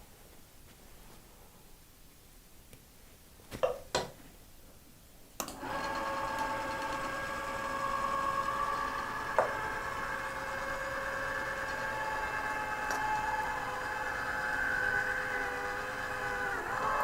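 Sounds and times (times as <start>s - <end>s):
small electric motor whirring: 5.6s - 17.0s.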